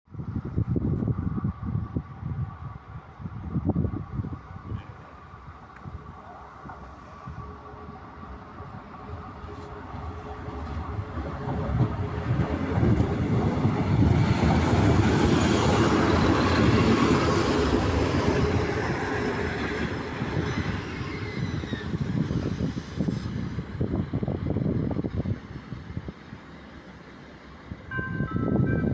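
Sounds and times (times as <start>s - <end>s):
diesel railcar engine: 0.2s - 28.9s
train wheels on rails: 4.5s - 28.9s
faint high squeal: 20.4s - 22.1s.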